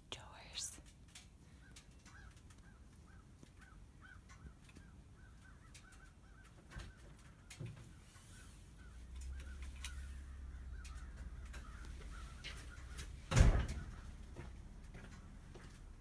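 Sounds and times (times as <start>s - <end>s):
door banging: 12.4s - 14.2s.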